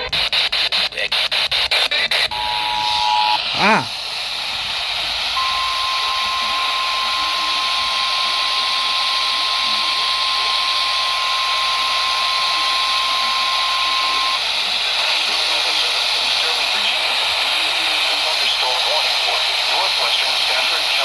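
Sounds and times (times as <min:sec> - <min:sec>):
steady warning alarm tone: 0:05.4 - 0:14.4
radio static hiss: 0:11.9 - 0:21.0.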